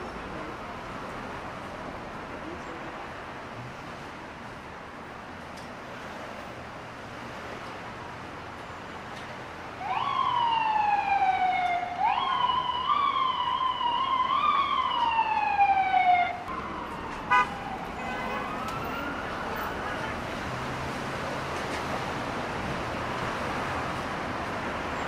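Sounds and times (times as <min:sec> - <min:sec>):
traffic noise: 0:00.0 - 0:25.0
loud siren blast: 0:09.8 - 0:19.8
emergency siren wailing: 0:09.8 - 0:21.2.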